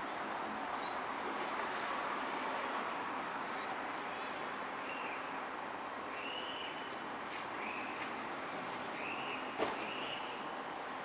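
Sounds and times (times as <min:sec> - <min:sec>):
distant traffic hiss: 0:00.0 - 0:11.0
bird whistling call: 0:04.8 - 0:05.3, 0:06.1 - 0:06.9, 0:07.6 - 0:08.0, 0:09.0 - 0:10.4.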